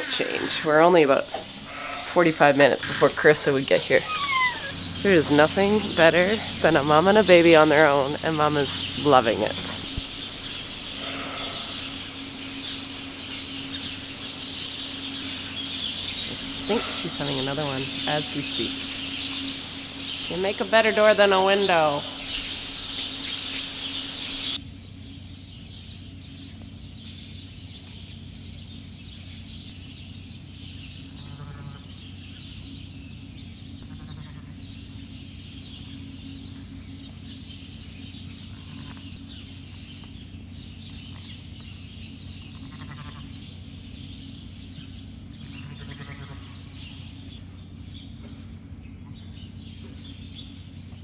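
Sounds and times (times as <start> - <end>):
steady low hum: 0.0 - 51.0
sheep bleating: 1.6 - 3.2, 3.9 - 8.1, 10.3 - 19.7, 31.2 - 31.8, 33.9 - 34.6, 42.6 - 43.3, 45.6 - 46.6.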